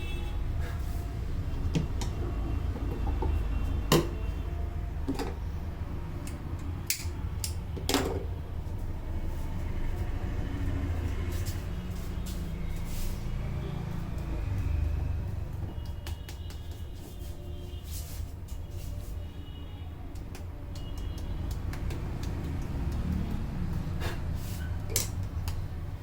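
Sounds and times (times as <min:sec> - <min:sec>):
hands slapping during massage: 0:15.8 - 0:17.3, 0:20.1 - 0:24.0, 0:25.0 - 0:25.7.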